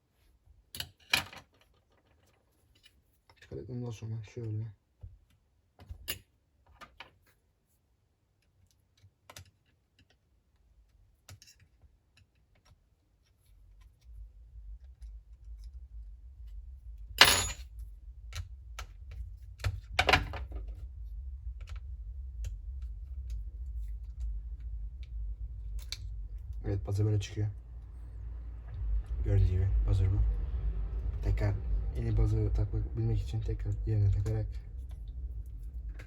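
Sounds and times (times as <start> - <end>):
small clicks and taps of tools: 8.4 - 14.1
low rumble: 14.0 - 36.0.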